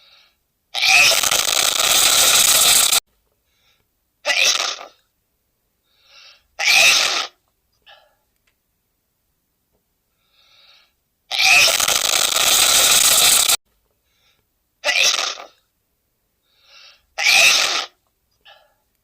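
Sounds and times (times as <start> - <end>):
man sneezing loudly: 6.6 - 7.3, 17.2 - 18.0.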